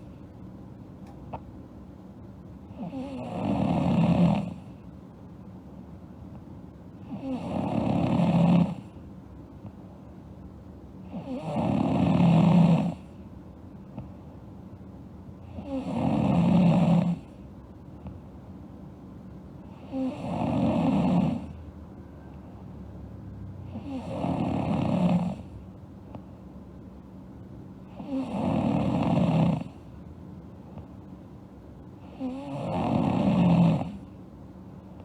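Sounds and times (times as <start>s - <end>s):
girl snoring: 2.8s - 4.6s, 7.0s - 8.8s, 11.1s - 13.0s, 15.5s - 17.2s, 19.7s - 21.5s, 23.7s - 25.5s, 27.9s - 29.7s, 32.0s - 34.0s.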